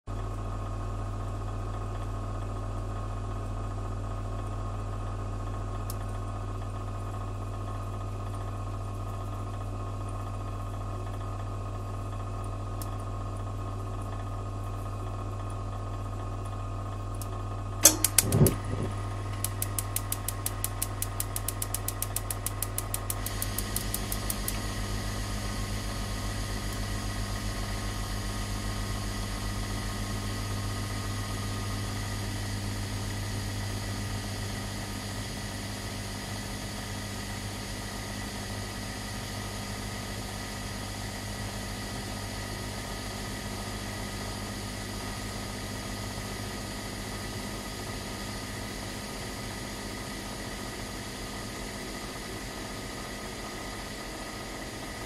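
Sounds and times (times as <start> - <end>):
heater control clicks: 5.8 - 6.2, 12.8 - 13.0, 17.1 - 27.6
igniter ticking: 17.1 - 27.8
low hum: 17.8 - 34.8
gas flame hissing: 17.8 - 36.7.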